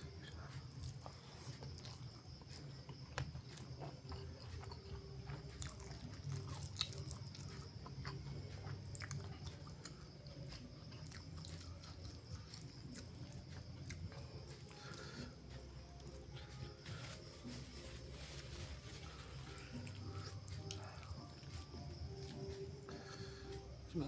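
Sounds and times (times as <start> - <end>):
chewing and wet mouth clicks: 0.2 - 15.2.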